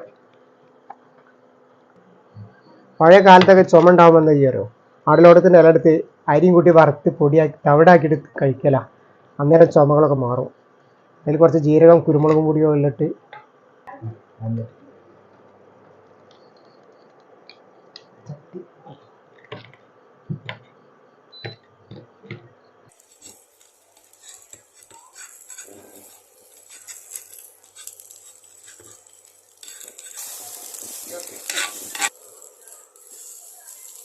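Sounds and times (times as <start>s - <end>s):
omelette sizzling in pan: 22.9s - 34.0s
utensil scraping and tapping: 23.1s - 34.0s.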